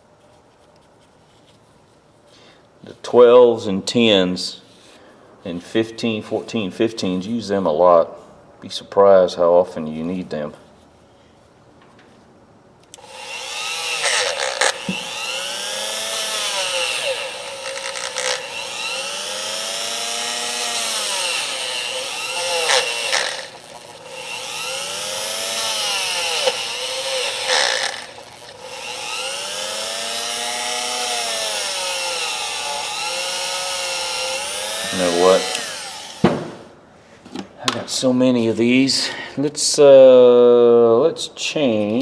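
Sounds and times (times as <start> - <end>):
electric power tool whining: 13.0 - 36.7.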